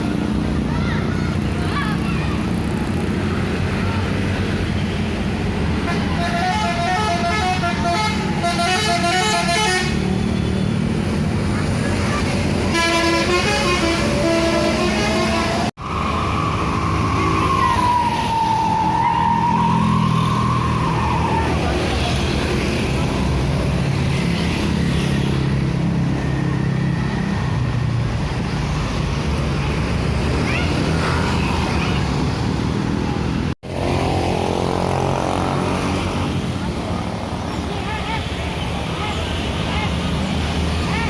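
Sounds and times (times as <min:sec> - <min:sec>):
bus engine rumble: 0:00.0 - 0:18.4
road traffic passing: 0:00.0 - 0:41.0
musical bus horn tune: 0:05.9 - 0:10.2, 0:12.7 - 0:15.7.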